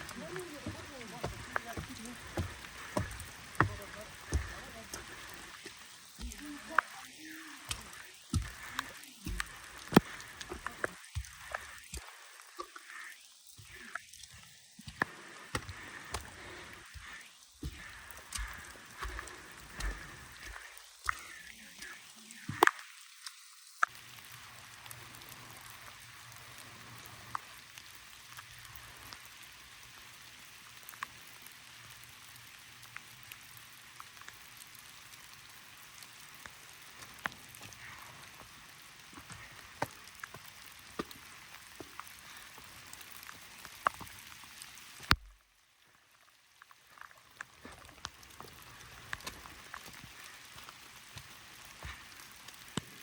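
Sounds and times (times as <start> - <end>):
raindrops ticking: 0.0 - 53.0
steady rain falling: 0.0 - 53.0.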